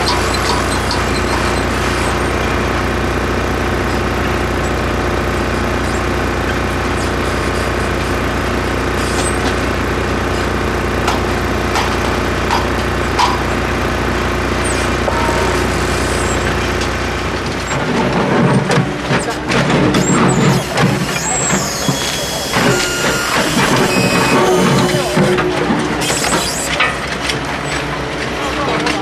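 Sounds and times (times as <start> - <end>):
construction machine engine running: 0.0 - 29.0.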